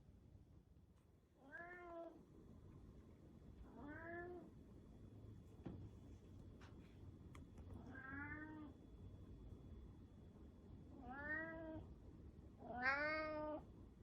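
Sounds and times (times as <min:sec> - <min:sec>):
cat meowing: 0:11.0 - 0:11.8, 0:12.6 - 0:13.6.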